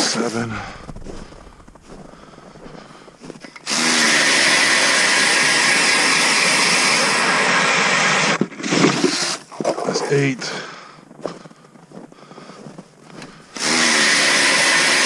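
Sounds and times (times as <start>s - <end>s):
cordless drill boring through ice: 3.3s - 10.0s, 13.2s - 15.0s.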